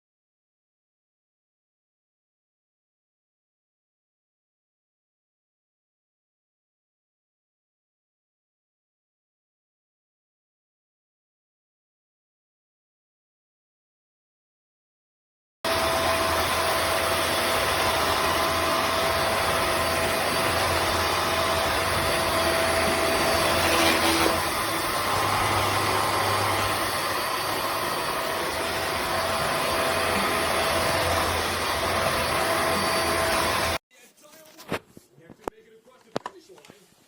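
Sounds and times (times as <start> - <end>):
vacuum cleaner running: 15.7 - 33.8.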